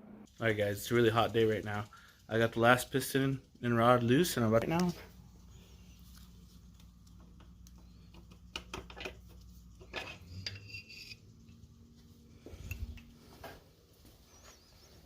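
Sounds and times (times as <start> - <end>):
metal engine parts clinking: 8.0 - 11.6
metallic ring: 10.0 - 11.3.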